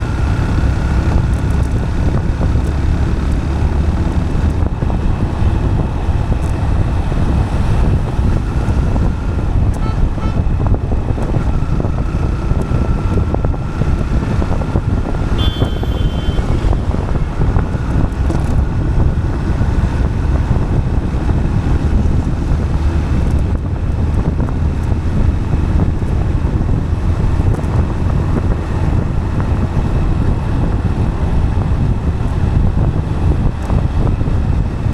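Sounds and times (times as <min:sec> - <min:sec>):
vehicle road rumble on asphalt: 0:00.0 - 0:34.9
wind buffeting microphone: 0:00.0 - 0:34.9.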